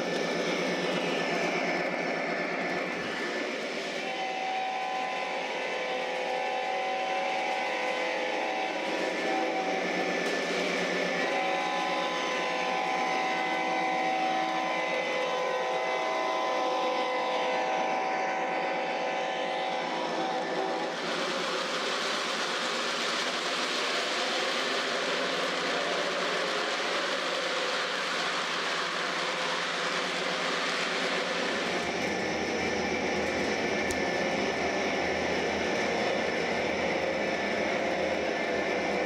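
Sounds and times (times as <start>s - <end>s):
rumble of wheels on track: 0.0s - 39.0s
air horn blasts: 4.0s - 9.8s.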